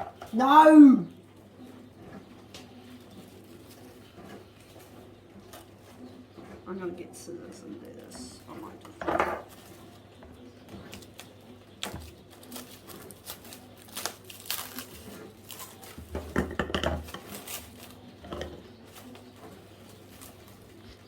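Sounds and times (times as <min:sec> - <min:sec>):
cling wrap crinkling: 0:02.8 - 0:06.0, 0:10.8 - 0:21.0
scissors cutting plastic wrap: 0:10.8 - 0:21.0.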